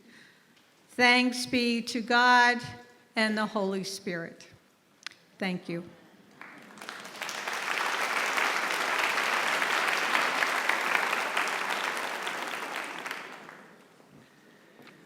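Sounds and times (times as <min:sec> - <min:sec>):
audience applauding: 0:06.3 - 0:14.0.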